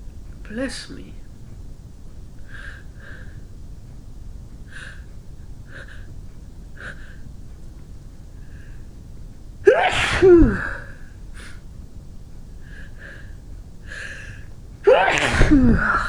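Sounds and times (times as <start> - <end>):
woman sneezing: 9.7 - 10.9, 14.9 - 16.0
woman taking sharp breaths: 12.6 - 14.6.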